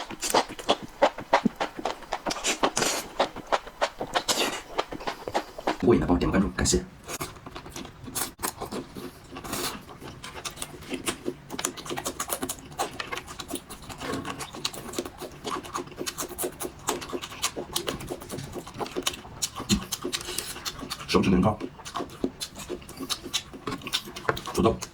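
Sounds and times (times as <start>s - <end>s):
mouth smacks and clicks: 0.0s - 5.8s
person chewing food: 0.0s - 5.8s, 7.0s - 24.9s.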